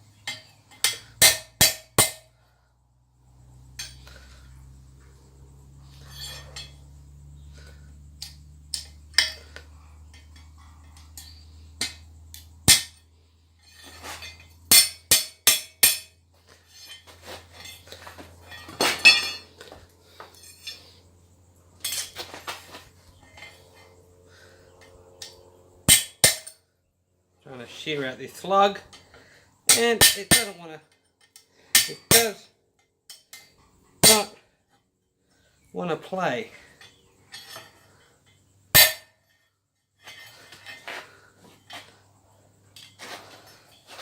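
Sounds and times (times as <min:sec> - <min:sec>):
metallic hits on anvil: 0:12.7 - 0:13.0, 0:14.7 - 0:16.1, 0:25.2 - 0:26.6, 0:29.7 - 0:30.5, 0:38.8 - 0:39.1
faint low hum: 0:16.0 - 0:29.7.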